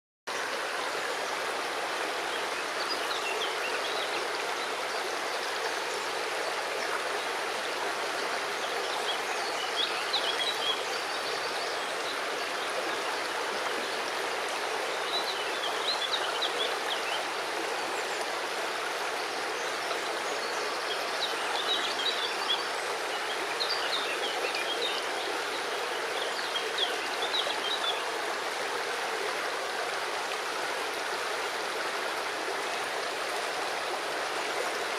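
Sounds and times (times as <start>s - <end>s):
river water flowing over stones: 0.3s - 34.9s.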